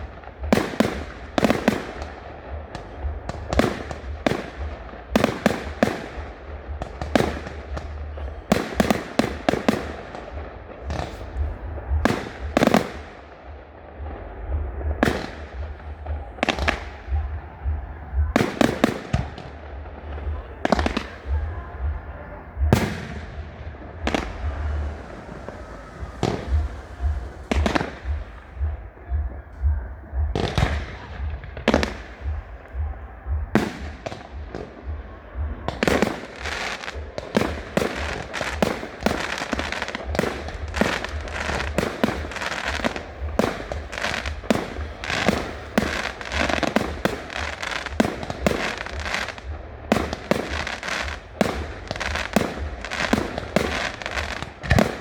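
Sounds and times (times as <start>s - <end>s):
fireworks bangs and crackles: 0.0s - 55.0s.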